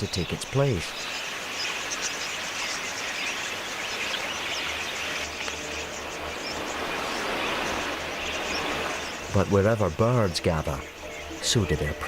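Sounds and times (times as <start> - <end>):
flock of budgerigars chattering: 0.0 - 12.0.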